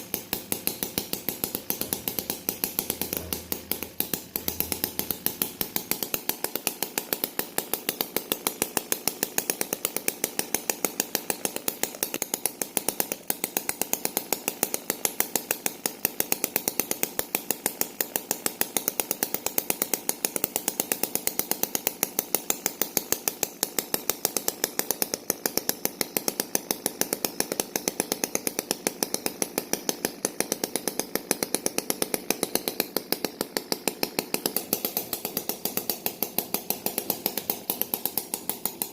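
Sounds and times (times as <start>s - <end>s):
small engine running: 0.0s - 38.9s.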